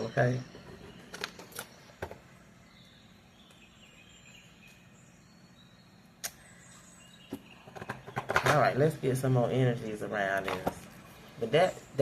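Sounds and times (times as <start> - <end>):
faint high chirping: 0.0 - 10.3
steady low hum: 0.0 - 12.0
sharp click: 6.2 - 6.4.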